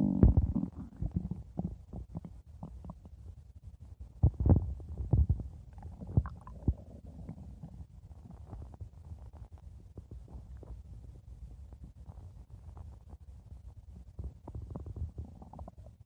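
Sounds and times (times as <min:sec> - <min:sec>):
stomach growling: 0:00.0 - 0:03.2, 0:04.2 - 0:11.2, 0:14.0 - 0:16.0.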